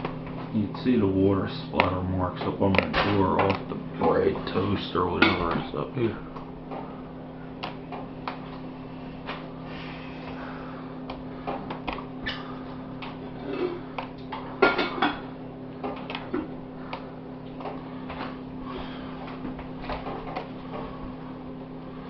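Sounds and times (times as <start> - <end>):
low electrical hum: 0.0 - 22.0
clicks and light knocks: 1.8 - 4.2.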